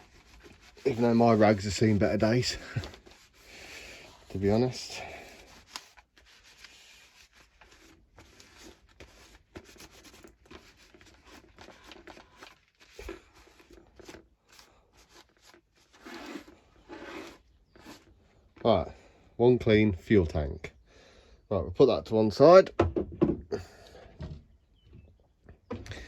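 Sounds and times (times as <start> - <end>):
cloth rag rubbing on tank: 0.0 - 18.2.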